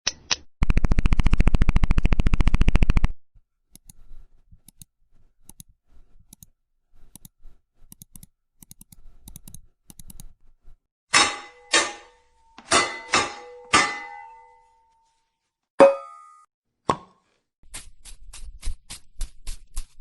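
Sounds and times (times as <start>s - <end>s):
computer mouse clicking: 3.7s - 6.5s, 7.1s - 10.4s.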